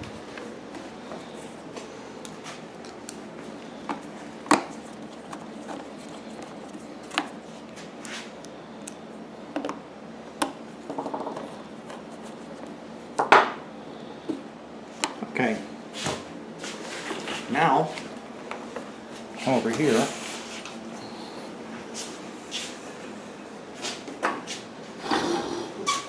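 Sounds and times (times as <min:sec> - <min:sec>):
hands scraping plastic: 0:03.9 - 0:08.3.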